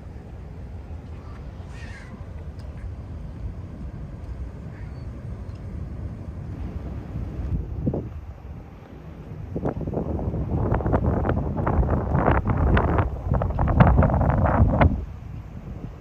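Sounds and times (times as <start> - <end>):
wind rumble on microphone: 0.0 - 16.0
harsh caw-like bird call: 1.6 - 2.2.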